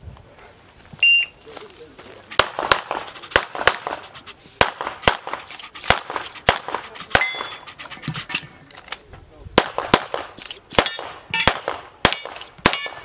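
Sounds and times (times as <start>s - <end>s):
pistol shots: 2.4s - 4.0s, 4.6s - 7.6s, 9.6s - 13.0s.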